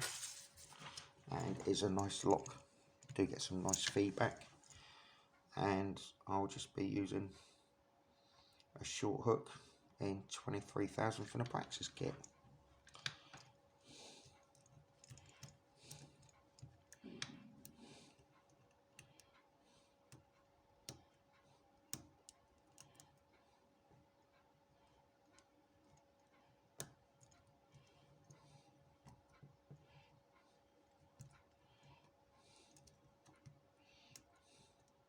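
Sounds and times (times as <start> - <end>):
faint steady hum: 0.0 - 35.0
lock pick clicking and scraping: 14.2 - 19.2.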